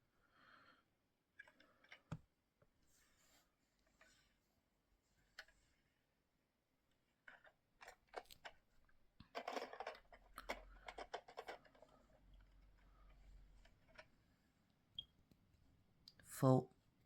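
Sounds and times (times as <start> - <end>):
faint clicks and scraping: 1.3 - 4.4, 5.2 - 5.8, 6.9 - 15.4.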